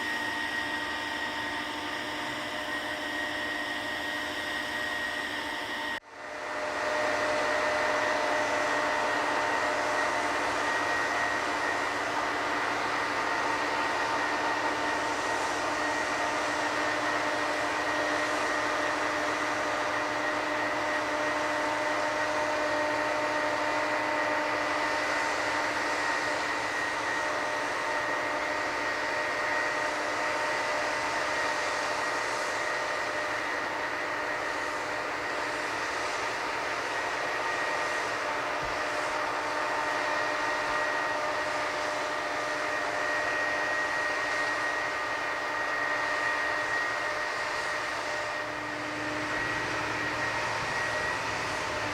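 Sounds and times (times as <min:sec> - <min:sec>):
machinery whine: 0:00.0 - 0:51.9.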